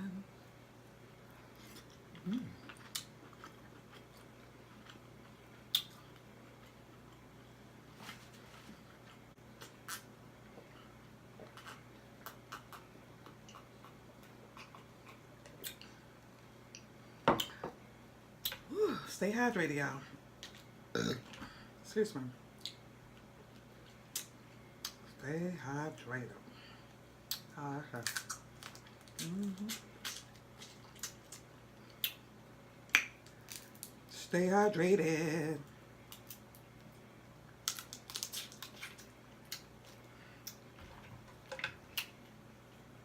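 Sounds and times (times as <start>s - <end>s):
person humming: 0.0s - 0.3s, 2.2s - 2.6s, 18.7s - 19.1s, 29.2s - 29.9s.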